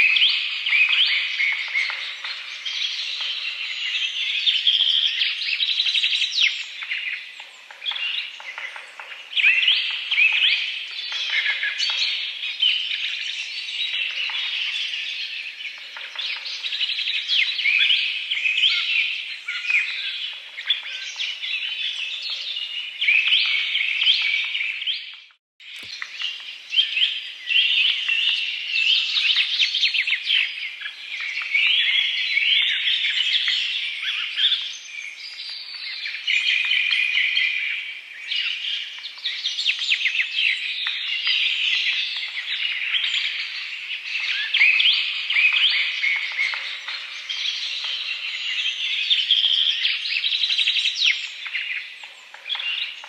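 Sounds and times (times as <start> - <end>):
small birds chirping: 0.0 - 53.0.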